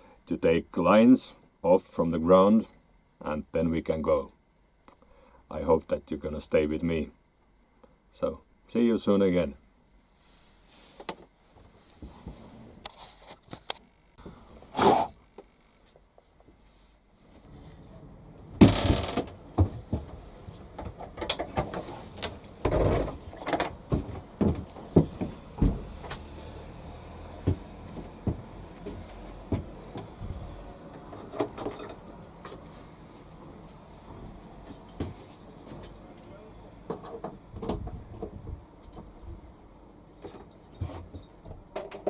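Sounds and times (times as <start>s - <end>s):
objects knocking and bumping: 18.6s - 25.9s.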